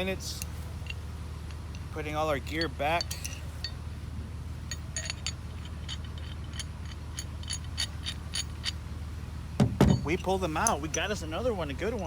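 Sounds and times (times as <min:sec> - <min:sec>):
steady low hum: 0:00.0 - 0:12.0
metal gear clinking: 0:00.4 - 0:03.8, 0:04.7 - 0:08.8, 0:09.6 - 0:11.2.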